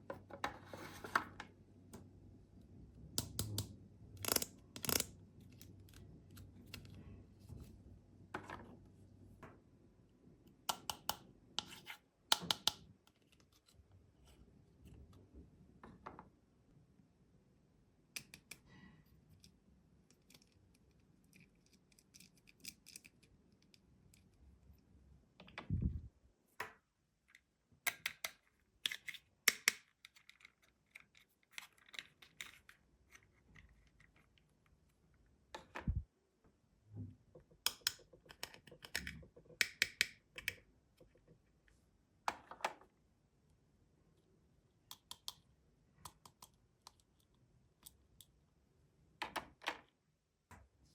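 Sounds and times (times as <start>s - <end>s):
plastic toy pieces clicking: 3.2s - 5.1s, 27.9s - 32.6s, 37.7s - 40.6s.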